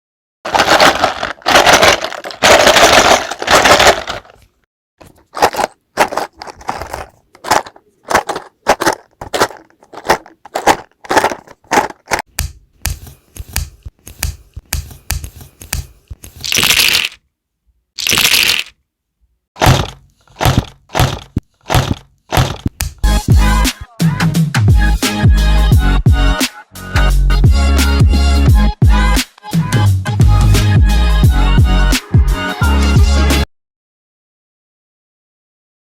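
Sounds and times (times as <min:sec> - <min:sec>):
toy bricks clicking together: 0:00.5 - 0:04.4, 0:05.3 - 0:12.3, 0:14.8 - 0:17.2, 0:18.0 - 0:18.8
toy bricks being poured out: 0:00.5 - 0:04.5, 0:05.1 - 0:12.2, 0:16.4 - 0:17.2, 0:18.0 - 0:18.8
toy bricks rattling when shaken: 0:00.5 - 0:12.3, 0:16.2 - 0:17.2, 0:18.0 - 0:18.8.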